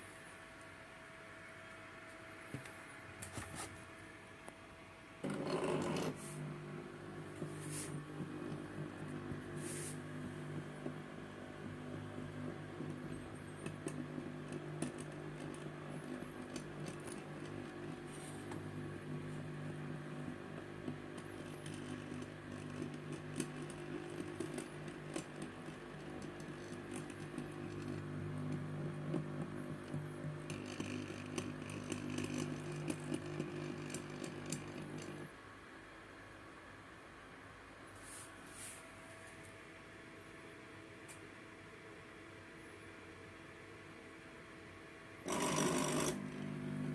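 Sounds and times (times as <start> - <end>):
small electric gear motor humming: 5.2 - 35.3, 45.2 - 46.9.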